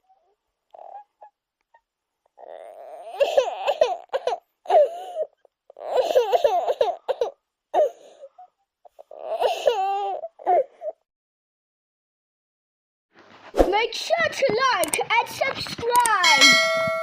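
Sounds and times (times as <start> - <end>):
baby crying: 2.4 - 8.1, 8.9 - 11.0.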